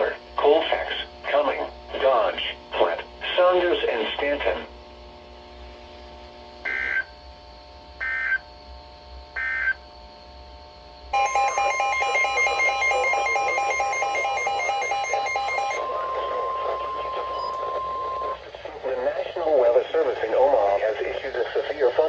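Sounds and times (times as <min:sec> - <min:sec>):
pulsing electronic alarm beeping: 0:11.2 - 0:18.4
warbling digital data bursts: 0:11.2 - 0:18.4
steady radio alert tone: 0:11.2 - 0:22.0.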